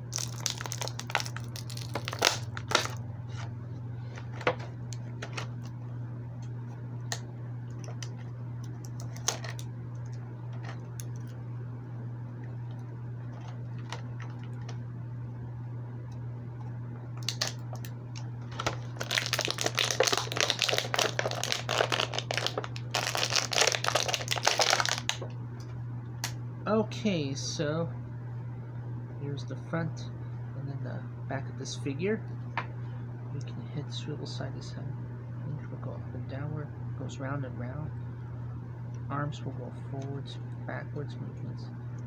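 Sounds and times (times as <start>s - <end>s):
steady low hum: 0.0s - 42.0s
plastic crinkling: 0.1s - 3.0s, 18.5s - 25.3s.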